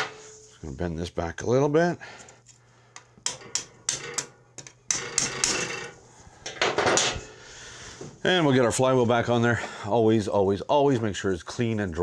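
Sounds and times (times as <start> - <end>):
metal tools clicking and tapping: 3.0 - 7.3.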